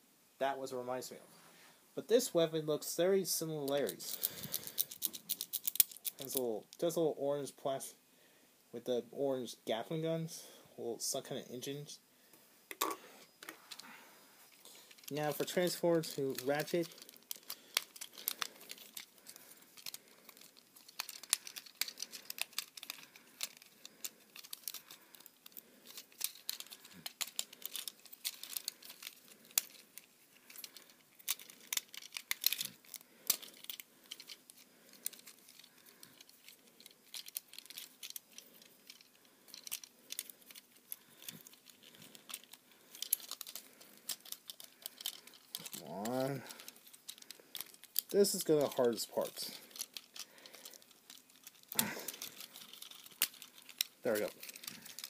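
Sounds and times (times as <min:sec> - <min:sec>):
plastic toy parts clicking and snapping: 0:03.7 - 0:06.8, 0:14.9 - 0:55.0.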